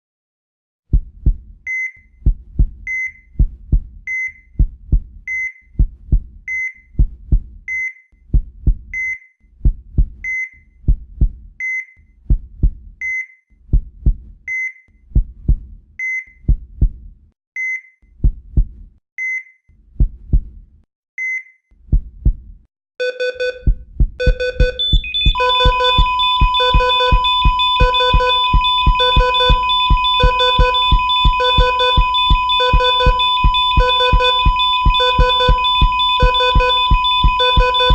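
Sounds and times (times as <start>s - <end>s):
heartbeat thumps: 0.9s - 1.6s, 2.2s - 4.0s, 4.6s - 5.2s, 5.8s - 6.4s, 7.0s - 7.7s, 8.3s - 9.0s, 9.6s - 10.2s, 10.8s - 11.6s, 12.2s - 13.0s, 13.7s - 14.4s, 15.1s - 15.8s, 16.4s - 17.2s, 18.2s - 18.9s, 20.0s - 20.6s, 21.9s - 22.6s, 23.5s - 37.9s
heart monitor beeps: 5.3s - 5.6s, 23.0s - 37.9s
multi-tone beeping alarm: 24.2s - 37.9s
flatline tone: 24.3s - 37.9s.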